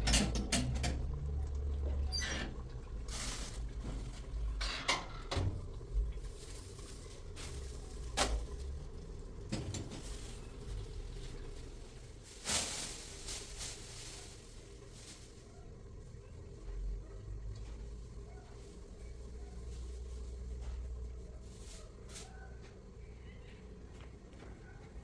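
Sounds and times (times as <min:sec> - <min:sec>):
objects knocking and clattering: 0:00.0 - 0:02.0
low background rumble: 0:00.0 - 0:24.2.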